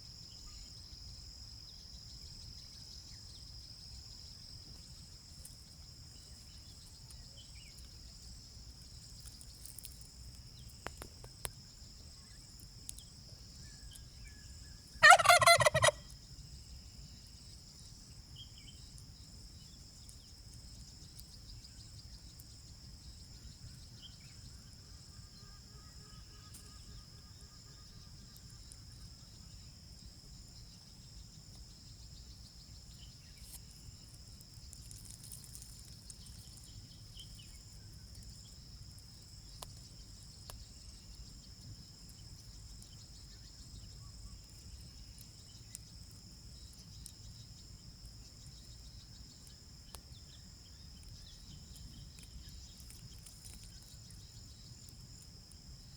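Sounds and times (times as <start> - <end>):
insects droning: 0.0 - 55.9
turkey gobbling: 15.0 - 16.0.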